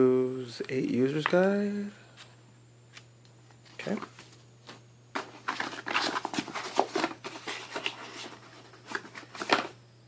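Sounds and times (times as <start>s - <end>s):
paper crinkling and rustling: 3.6s - 9.7s.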